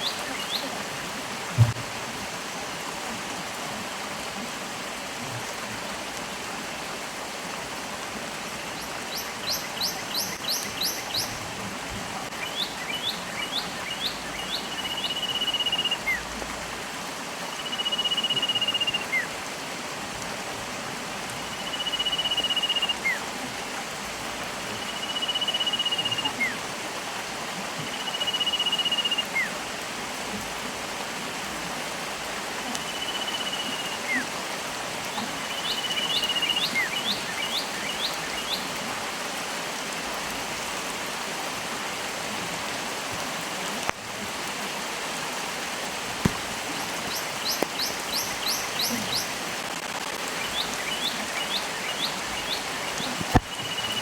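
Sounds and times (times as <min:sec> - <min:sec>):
stream rushing: 0:00.0 - 0:54.0
birds chirping: 0:46.2 - 0:49.4, 0:50.3 - 0:54.0.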